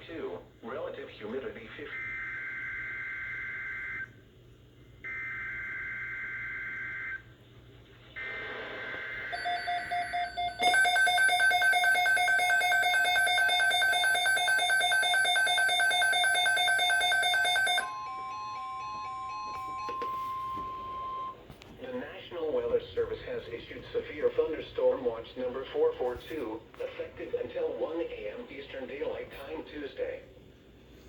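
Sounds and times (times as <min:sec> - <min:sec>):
pulsing multi-tone alert signal: 0:09.4 - 0:21.4.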